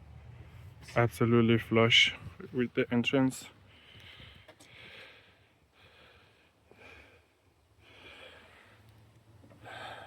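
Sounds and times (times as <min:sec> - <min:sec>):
faint breaths near microphone: 0:03.4 - 0:10.0.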